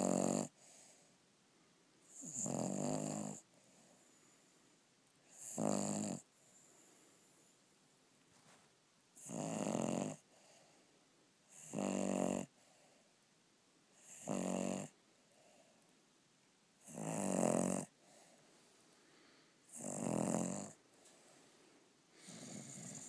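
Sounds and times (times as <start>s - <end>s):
person snoring: 0.0s - 0.5s, 2.2s - 3.4s, 5.3s - 6.2s, 9.2s - 10.2s, 11.5s - 12.5s, 14.0s - 14.9s, 16.9s - 17.9s, 19.7s - 20.8s, 22.2s - 23.0s
quiet breathing: 0.0s - 2.2s, 3.3s - 8.9s, 10.1s - 11.6s, 12.4s - 14.3s, 14.9s - 16.1s, 17.8s - 23.0s.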